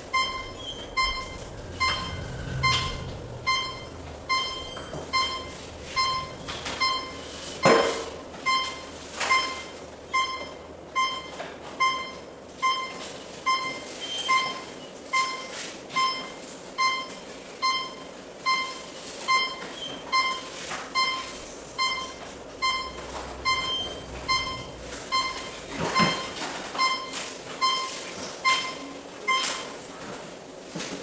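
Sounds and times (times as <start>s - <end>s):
electronic beeper short high beeps: 0.1s - 7.6s.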